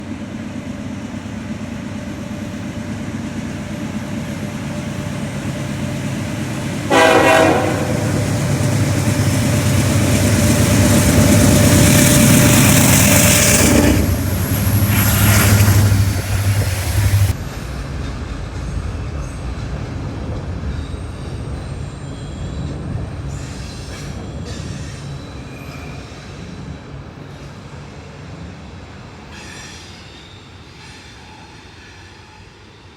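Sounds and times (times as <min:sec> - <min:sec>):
train rumbling past: 0:00.0 - 0:32.9
train horn: 0:06.9 - 0:08.6.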